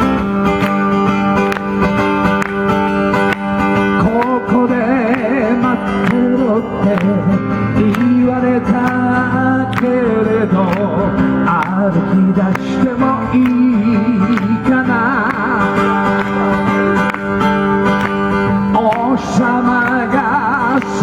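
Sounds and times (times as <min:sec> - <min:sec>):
acoustic guitar strumming: 0:00.0 - 0:21.0
man singing: 0:03.9 - 0:17.1, 0:18.5 - 0:21.0.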